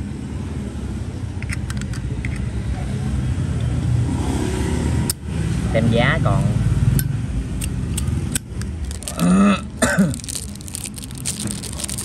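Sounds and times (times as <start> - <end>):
low background rumble: 7.9 - 12.0
man clearing his throat: 9.1 - 10.2.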